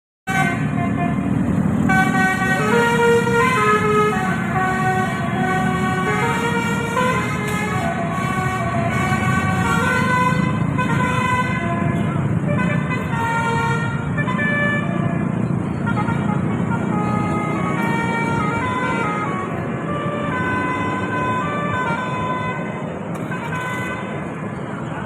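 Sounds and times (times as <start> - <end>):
multi-tone musical bus horn: 0.3 - 24.5
bus engine rumbling: 0.3 - 25.0.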